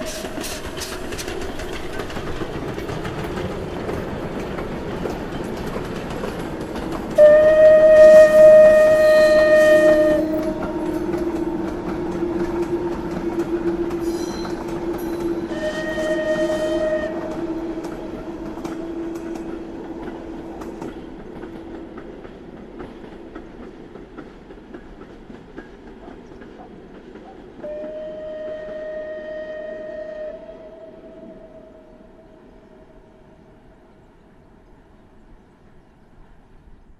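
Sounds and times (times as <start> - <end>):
train running noise: 0.0 - 36.9
steam whistle blowing: 7.2 - 19.5, 27.6 - 32.3.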